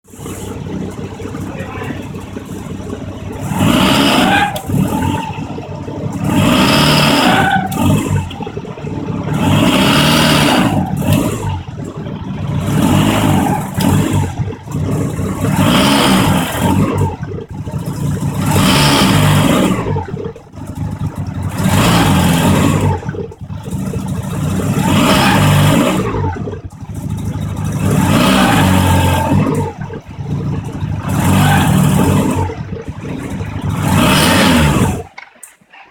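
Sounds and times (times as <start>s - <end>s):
rotary engine revving: 0.0s - 35.9s
clutch squeal: 0.2s - 9.0s.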